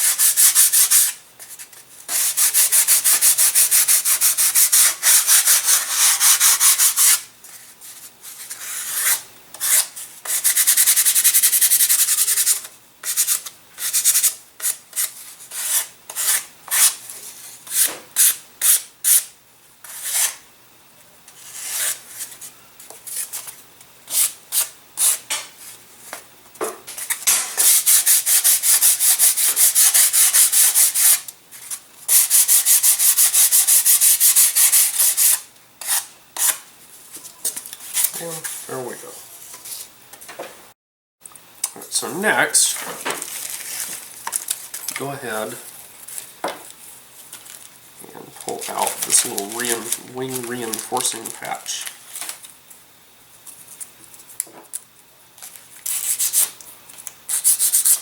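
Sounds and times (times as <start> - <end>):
hand sanding strokes: 2.1 - 7.2, 27.6 - 31.2, 32.1 - 36.5.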